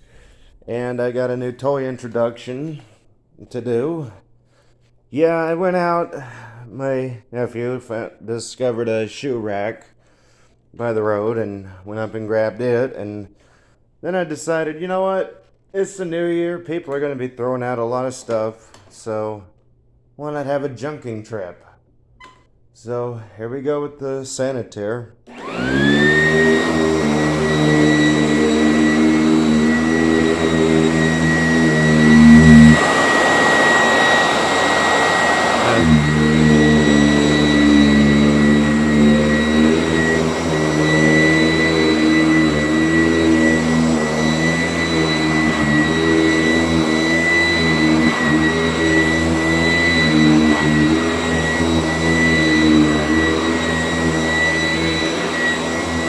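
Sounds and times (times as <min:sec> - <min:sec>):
vacuum cleaner motor whine: 0:25.3 - 0:56.0
loud rushing noise: 0:29.2 - 0:42.8.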